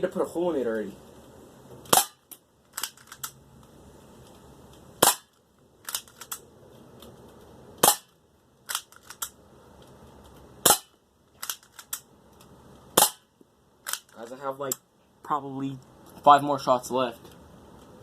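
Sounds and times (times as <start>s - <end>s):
bb pistol shots: 1.9s - 3.4s, 5.0s - 6.4s, 7.8s - 9.3s, 10.6s - 12.0s, 13.0s - 14.1s.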